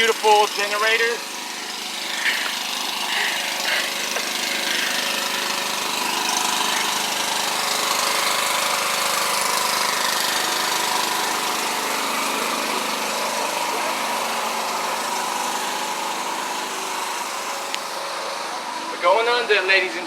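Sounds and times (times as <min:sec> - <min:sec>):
generator engine running: 0:00.0 - 0:20.0.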